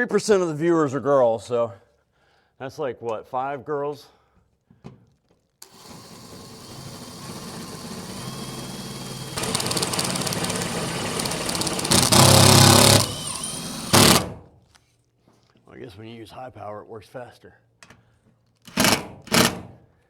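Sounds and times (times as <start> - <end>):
power drill driving screw: 5.6 - 14.4, 18.7 - 19.6.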